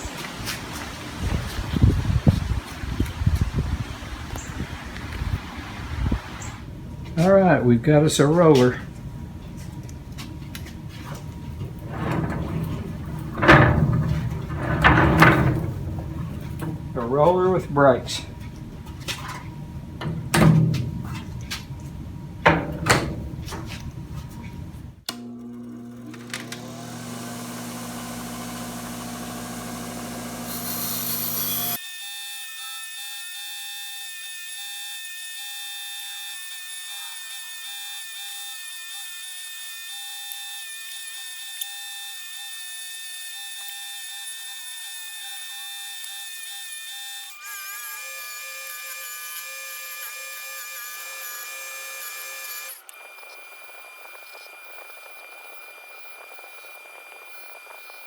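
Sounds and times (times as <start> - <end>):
tool chest rolling on casters: 11.5 - 17.2
electric power tool humming: 25.1 - 31.8.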